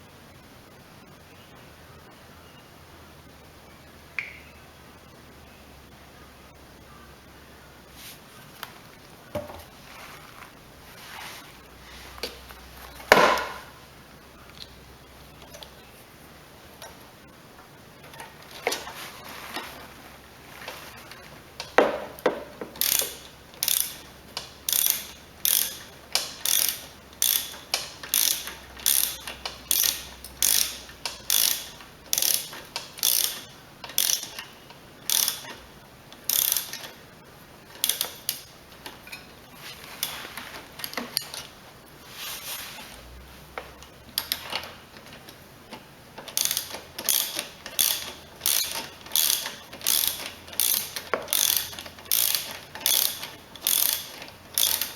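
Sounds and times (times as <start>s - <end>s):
ratchet wrench clicking: 21.5s - 37.0s, 37.7s - 39.1s, 43.6s - 45.4s, 46.2s - 54.9s.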